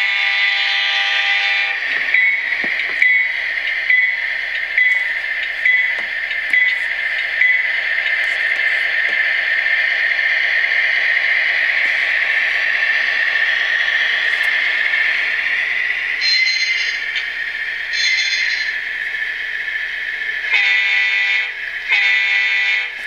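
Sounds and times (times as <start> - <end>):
locomotive horn: 0.0 - 1.9, 20.5 - 23.0
diesel locomotive running sound: 0.0 - 23.0
locomotive bell striking: 1.2 - 8.2, 16.2 - 17.2, 17.9 - 18.8.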